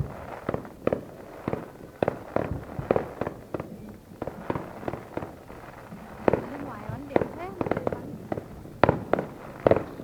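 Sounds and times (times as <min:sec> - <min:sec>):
fireworks bangs: 0:00.0 - 0:10.0.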